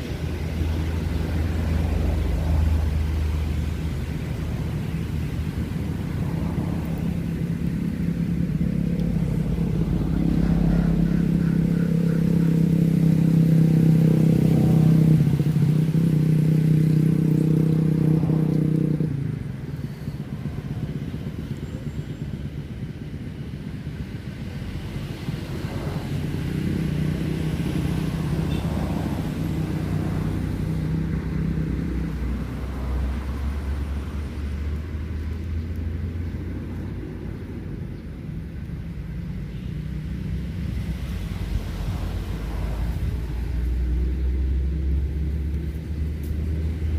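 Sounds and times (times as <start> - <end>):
low hum: 0.0 - 18.8
quieter second engine: 0.0 - 46.9
vehicle engine running: 0.0 - 46.9.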